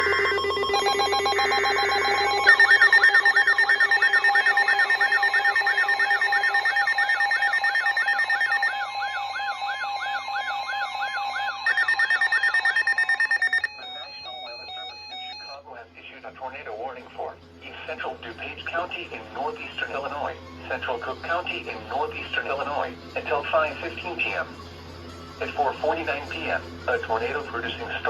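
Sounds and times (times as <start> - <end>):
buzzing signal: 0.0 - 9.8
electronic alarm warbling: 0.0 - 15.6.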